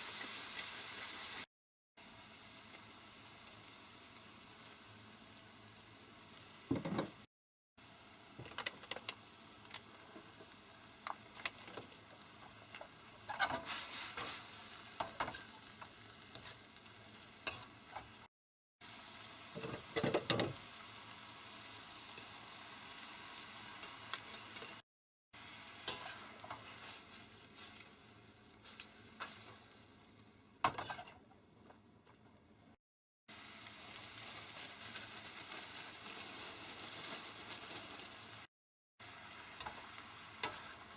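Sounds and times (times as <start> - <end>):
food sizzling in a pan: 0.0 - 24.8, 25.4 - 31.2, 33.3 - 40.9.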